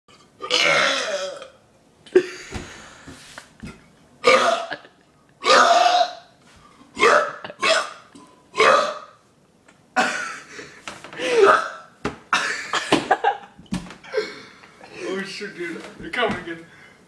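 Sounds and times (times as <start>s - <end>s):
person burping: 0.4s - 2.3s, 4.2s - 6.3s, 7.0s - 8.0s, 8.6s - 9.2s, 11.2s - 12.9s.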